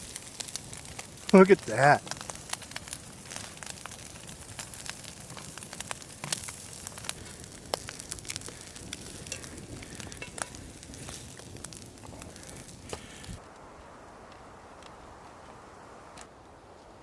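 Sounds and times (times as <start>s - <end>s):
food sizzling in a skillet: 0.0s - 13.4s
sharp pops and crackles: 0.0s - 15.0s.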